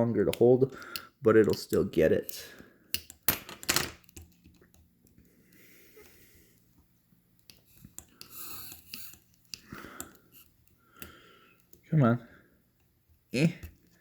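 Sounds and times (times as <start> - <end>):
person breathing close up: 0.7 - 1.2, 5.2 - 6.7, 9.5 - 12.6.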